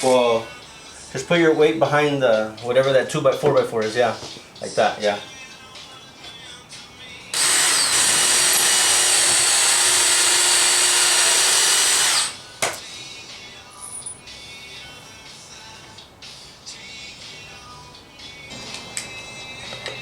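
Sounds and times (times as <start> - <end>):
power tool whining: 7.3 - 12.4.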